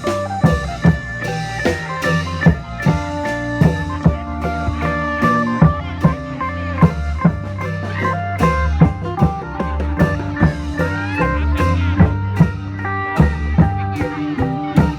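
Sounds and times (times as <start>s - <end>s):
long drum percussion: 0.0s - 14.9s.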